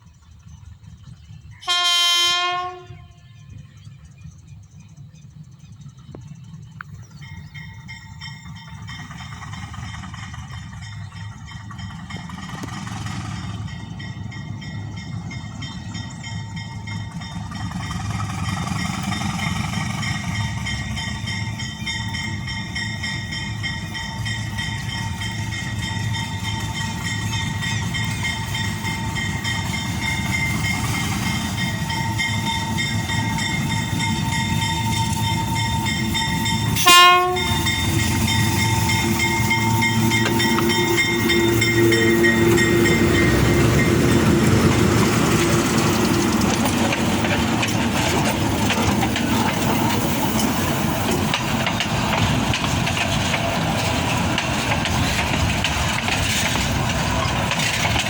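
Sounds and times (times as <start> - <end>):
freight train rolling: 0.0 - 58.0
locomotive horn blast: 1.6 - 3.4, 36.6 - 45.0.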